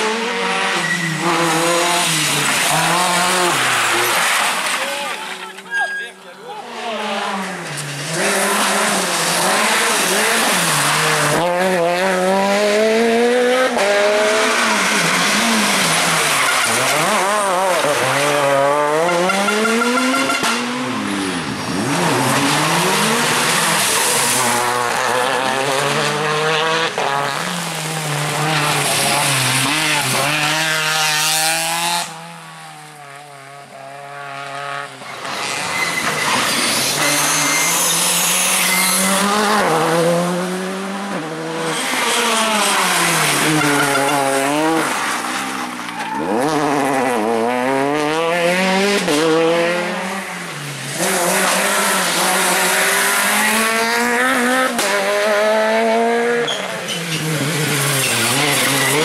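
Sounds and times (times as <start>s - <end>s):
rally car engines revving: 0.0s - 59.0s
tyres squealing: 3.5s - 6.4s.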